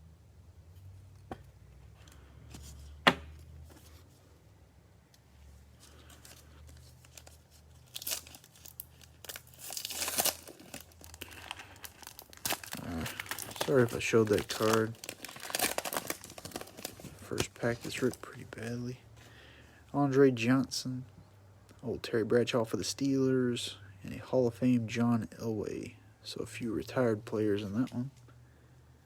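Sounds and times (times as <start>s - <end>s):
cellophane wrapper tearing and crinkling: 5.8s - 18.8s.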